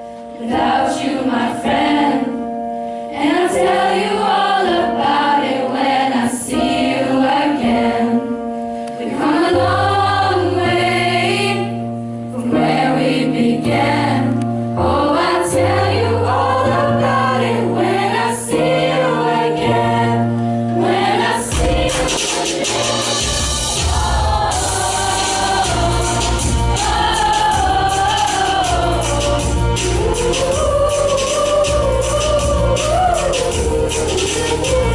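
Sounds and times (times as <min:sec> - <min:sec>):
choir singing: 0:00.4 - 0:34.9
instrumental accompaniment: 0:06.8 - 0:34.9
bass line held notes: 0:23.1 - 0:34.9.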